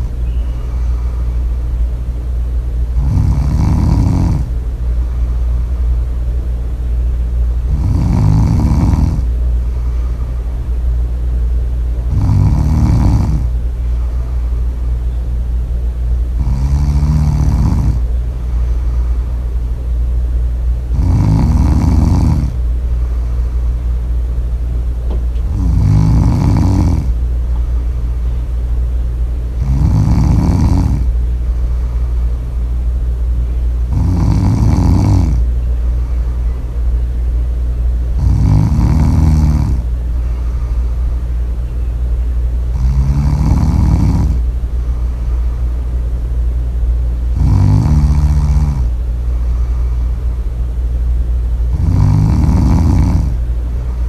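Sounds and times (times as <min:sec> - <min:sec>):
steady low hum: 0:00.0 - 0:54.0
person snoring loudly: 0:03.0 - 0:04.5, 0:07.7 - 0:10.0, 0:12.1 - 0:13.6, 0:16.4 - 0:18.0, 0:20.9 - 0:22.6, 0:25.5 - 0:27.2, 0:29.6 - 0:31.2, 0:33.9 - 0:35.5, 0:38.2 - 0:41.0, 0:42.7 - 0:44.4, 0:47.3 - 0:50.1, 0:51.7 - 0:54.0.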